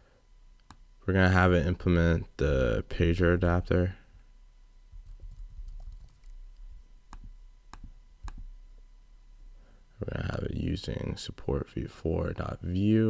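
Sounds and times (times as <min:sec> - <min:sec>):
low steady hum: 0:00.0 - 0:13.0
computer keyboard typing: 0:05.0 - 0:08.5.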